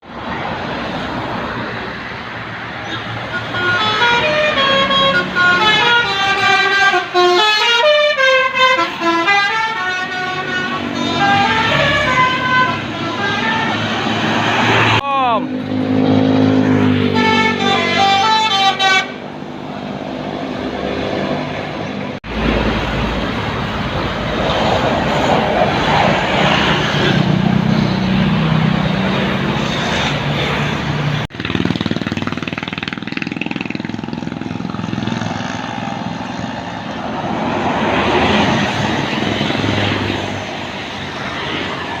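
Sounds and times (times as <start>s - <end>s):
rumble of passing traffic: 0.0s - 42.0s
multi-tone bus horn melody: 2.8s - 14.4s, 16.5s - 19.8s.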